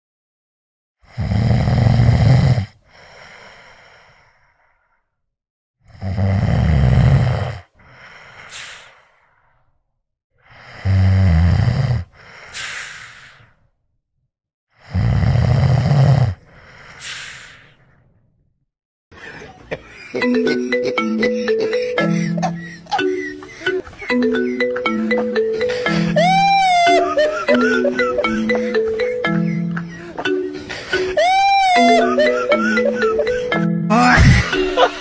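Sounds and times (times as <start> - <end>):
man snoring loudly: 1.0 - 3.4, 5.9 - 7.7, 10.5 - 13.4, 14.8 - 17.6
breath ending in high whistle: 12.5 - 13.5, 17.0 - 17.8.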